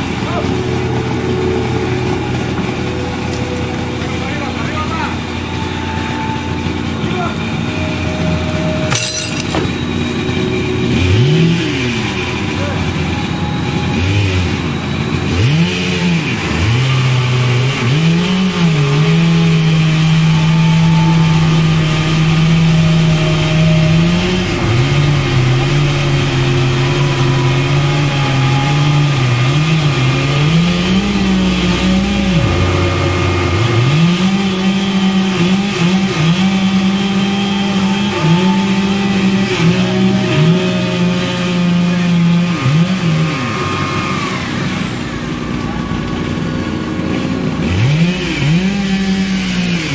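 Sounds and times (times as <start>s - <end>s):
engine revving: 0.0s - 49.9s.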